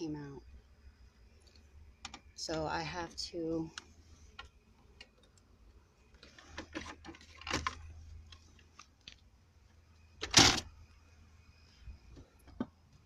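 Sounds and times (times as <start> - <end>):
hands clicking and rustling wire: 6.1 - 9.2.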